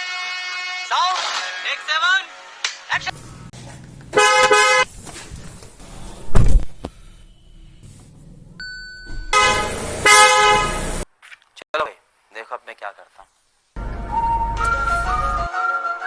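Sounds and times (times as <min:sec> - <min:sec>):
car horn honking: 0:04.2 - 0:04.9, 0:09.3 - 0:11.0
loud low thump: 0:06.3 - 0:06.9.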